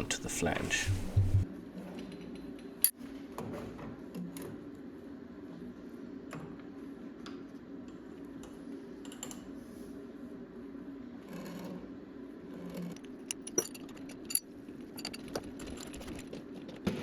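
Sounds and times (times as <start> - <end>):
steady low hum: 0.0 - 1.5.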